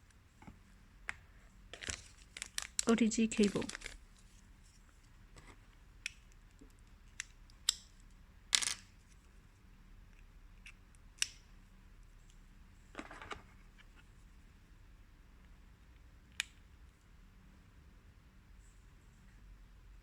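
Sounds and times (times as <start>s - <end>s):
small plastic clicks: 6.0s - 8.9s, 10.1s - 11.5s.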